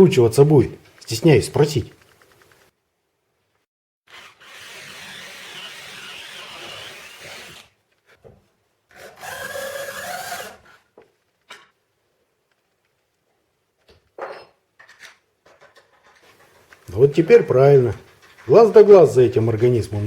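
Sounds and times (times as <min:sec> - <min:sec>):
power drill boring into wood: 0:04.1 - 0:07.7, 0:09.0 - 0:10.7.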